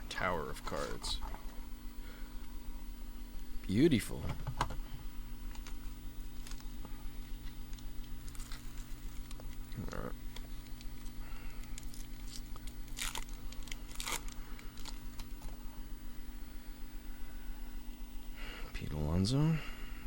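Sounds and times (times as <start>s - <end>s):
steady low hum: 0.0s - 20.0s
foil wrapper ripping: 5.5s - 6.7s, 7.4s - 15.5s
foil wrapper crinkling: 5.5s - 15.6s.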